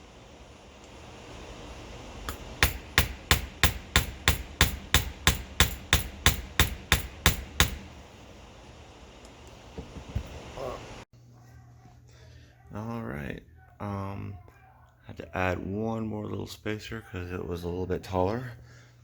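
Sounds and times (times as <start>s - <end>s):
hammer striking metal: 2.2s - 8.0s.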